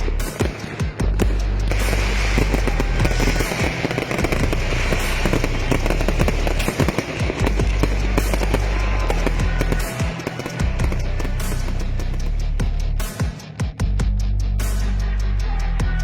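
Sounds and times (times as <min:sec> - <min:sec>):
music with deep bass: 0:00.0 - 0:16.0
fireworks crackling and banging: 0:00.2 - 0:13.5.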